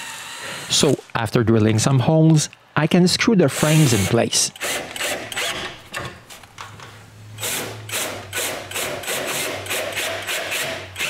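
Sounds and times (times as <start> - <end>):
power drill driving screws: 3.6 - 5.8, 7.4 - 11.0
rapid clicking of drill clutch: 7.4 - 11.0.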